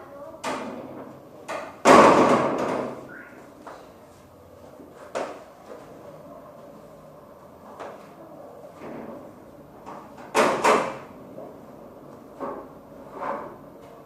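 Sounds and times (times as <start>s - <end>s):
noisy clatter: 0.4s - 3.1s
household knocks and bangs: 1.5s - 3.0s, 10.2s - 11.1s.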